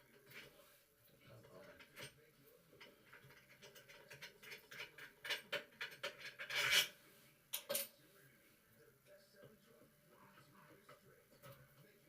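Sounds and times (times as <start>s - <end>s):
scratching and clicking on metal: 1.3s - 7.0s.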